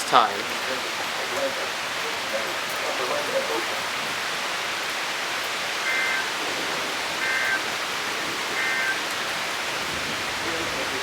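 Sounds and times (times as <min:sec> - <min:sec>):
heavy rain hissing: 0:00.0 - 0:11.0.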